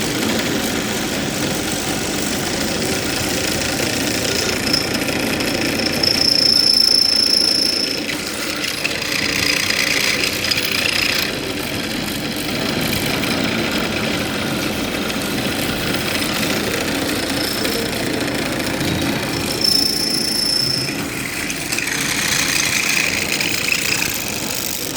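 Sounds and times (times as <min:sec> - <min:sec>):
drilling machine running: 0:00.0 - 0:24.9
high-pitched drill squeal: 0:03.4 - 0:11.4, 0:19.1 - 0:24.6.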